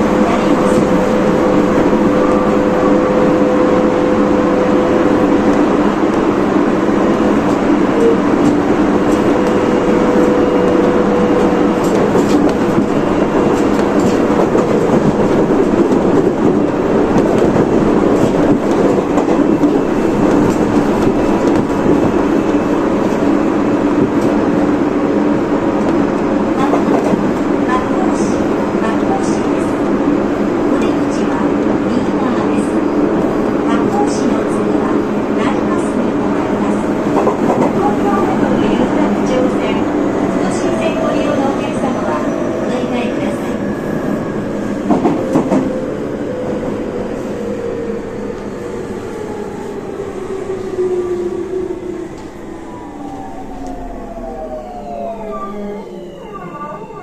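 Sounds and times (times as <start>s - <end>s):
train wheels rumbling on rail: 0.0s - 57.0s
rail joint clicks: 7.3s - 24.7s, 30.7s - 43.5s, 44.6s - 49.5s, 50.1s - 54.4s.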